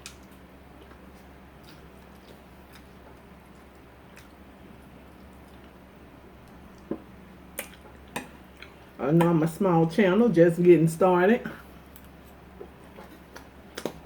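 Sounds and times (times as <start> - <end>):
faint chewing: 0.0 - 9.0, 11.5 - 14.0
faint steady hum: 0.0 - 14.0.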